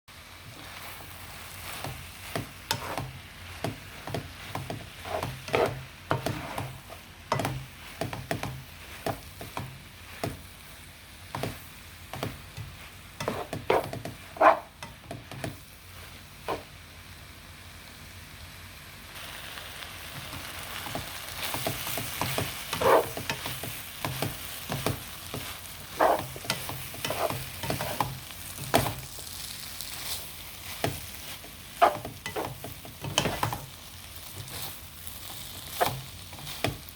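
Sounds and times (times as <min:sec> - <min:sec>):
food sizzling: 0:00.1 - 0:36.9
utensil scraping a pan: 0:00.5 - 0:10.4, 0:12.2 - 0:15.5, 0:16.4 - 0:16.7, 0:20.8 - 0:29.1, 0:29.9 - 0:33.8, 0:34.4 - 0:36.9.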